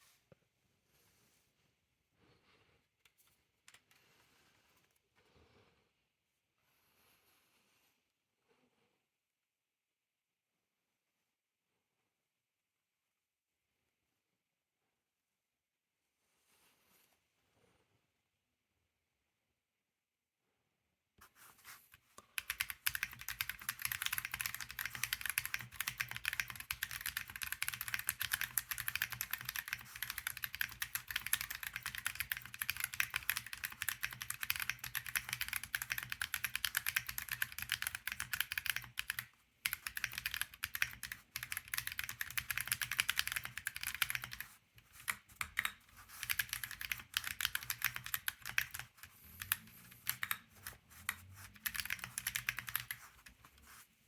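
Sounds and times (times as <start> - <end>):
mechanical keyboard typing: 22.4 - 53.4.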